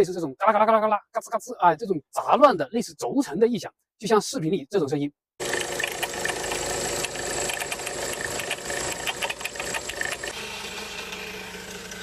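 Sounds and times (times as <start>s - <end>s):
belt pulleys clattering and creaking: 5.4s - 10.4s.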